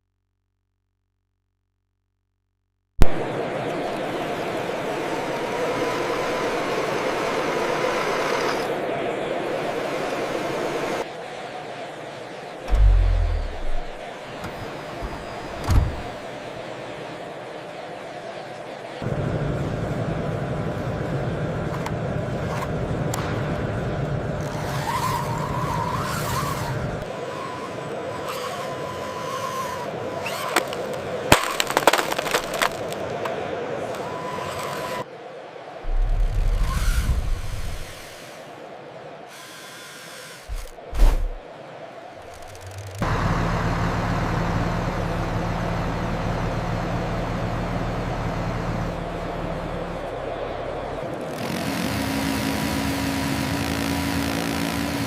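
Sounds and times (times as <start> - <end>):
model vehicle motor whine: 5.4 - 8.7, 24.4 - 30.8, 35.9 - 38.4, 39.3 - 40.8, 51.2 - 55.0
low rumble: 12.7 - 14.0
vehicle engine running: 12.7 - 14.1, 42.8 - 55.0.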